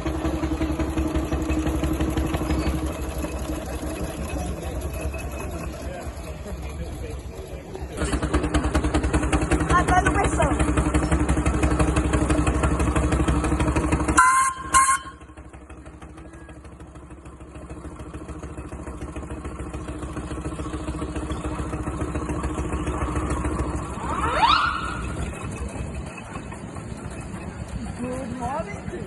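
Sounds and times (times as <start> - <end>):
small engine running: 0.0 - 29.0
loud whistle blasts: 14.1 - 15.4, 24.0 - 25.1.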